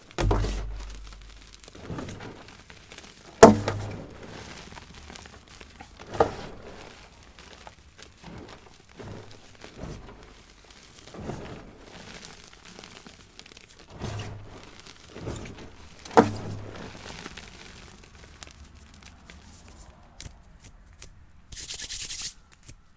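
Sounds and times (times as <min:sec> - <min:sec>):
chalk crackles: 0:00.0 - 0:22.8
chalk crunching: 0:00.0 - 0:22.8.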